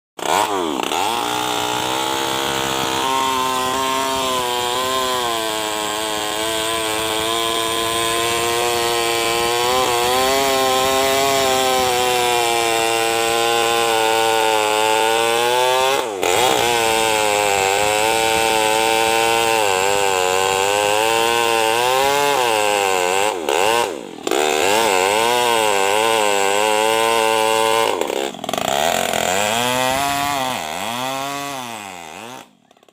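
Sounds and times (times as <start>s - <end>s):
chainsaw cutting wood: 0.2s - 32.9s.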